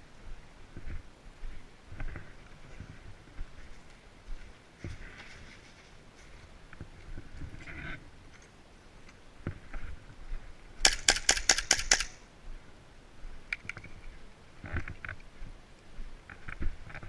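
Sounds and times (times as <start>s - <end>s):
airsoft gun firing burst: 10.8s - 12.2s.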